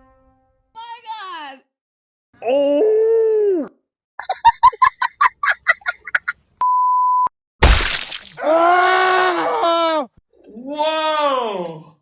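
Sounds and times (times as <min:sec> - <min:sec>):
censor bleep: 0:06.6 - 0:07.3
long wailing cry: 0:08.4 - 0:10.1.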